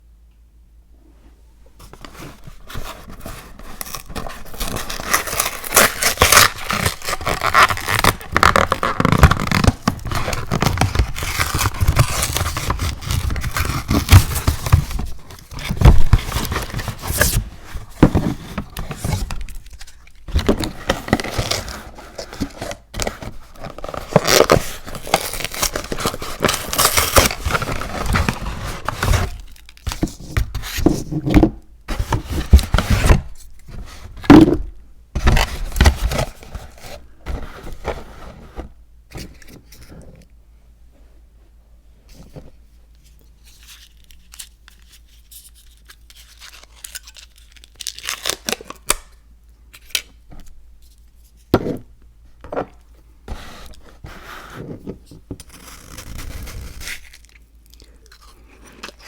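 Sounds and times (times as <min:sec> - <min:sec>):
scraping and crackling handling noise: 0:01.7 - 0:40.4.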